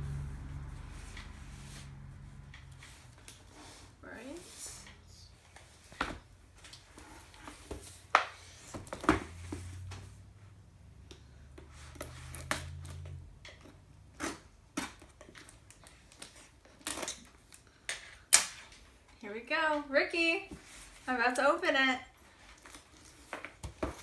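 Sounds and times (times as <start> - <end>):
low hum: 0.0 - 3.5.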